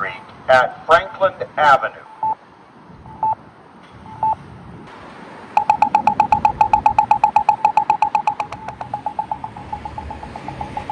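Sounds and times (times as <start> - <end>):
push button locator beep: 5.6 - 10.9
rapid electronic ticking: 5.6 - 10.9.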